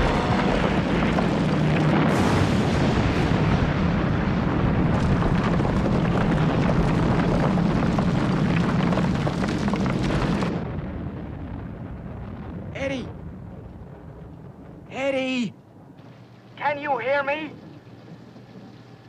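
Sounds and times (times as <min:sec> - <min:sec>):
explosion blast: 0:00.0 - 0:14.9
rockslide rumble and crashes: 0:00.0 - 0:14.9.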